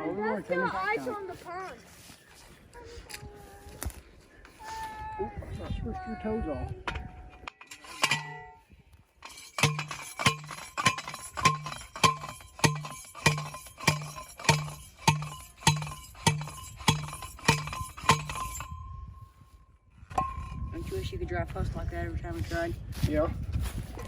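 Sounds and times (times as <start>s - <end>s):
metal strikes on fence post: 6.9s - 8.6s, 9.2s - 19.0s.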